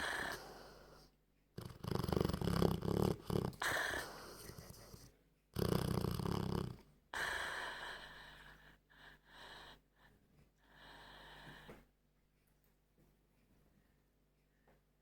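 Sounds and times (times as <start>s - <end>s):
dog snoring: 0.0s - 1.0s, 1.6s - 7.8s
dog breathing: 0.0s - 9.8s.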